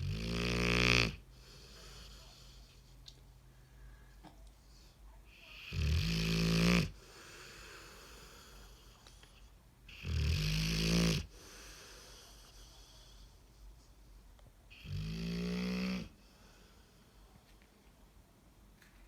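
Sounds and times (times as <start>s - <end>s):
dog snoring: 0.0s - 2.3s, 5.6s - 8.5s, 9.9s - 11.5s, 14.7s - 16.2s.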